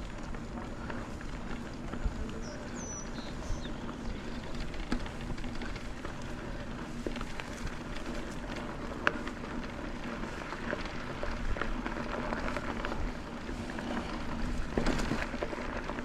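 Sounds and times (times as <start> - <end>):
bike clicks and rattles: 0.0 - 16.0
bike tyres rolling on dirt: 0.0 - 16.0.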